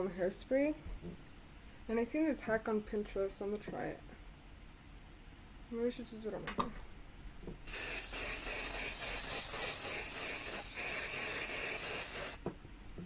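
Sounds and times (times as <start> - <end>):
aerosol spray hissing: 7.7 - 12.4.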